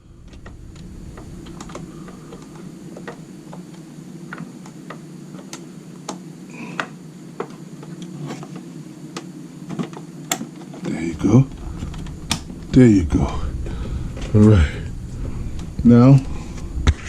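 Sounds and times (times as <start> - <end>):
steady low hum: 0.0 - 7.4, 10.8 - 17.0
clicks of handling computer parts: 6.8 - 10.8.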